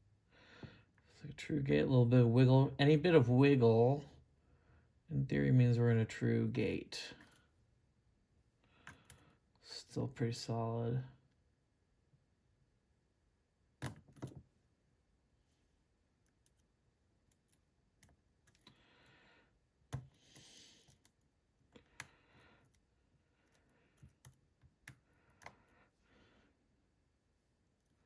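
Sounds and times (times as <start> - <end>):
lock pick clicking and scraping: 17.3 - 18.8.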